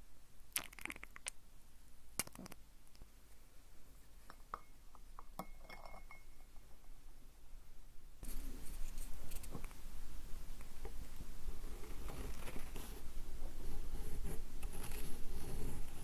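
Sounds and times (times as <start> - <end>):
clinks of hard pieces touching: 4.3 - 6.7.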